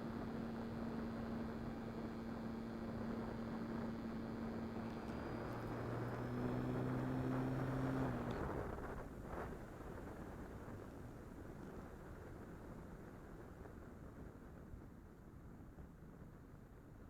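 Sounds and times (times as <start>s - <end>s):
model plane motor humming: 0.0s - 9.4s.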